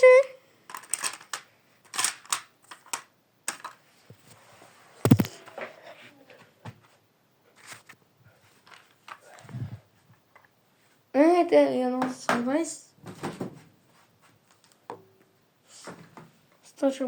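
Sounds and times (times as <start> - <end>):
small objects clicking and knocking: 0.7 - 3.8, 5.1 - 5.4.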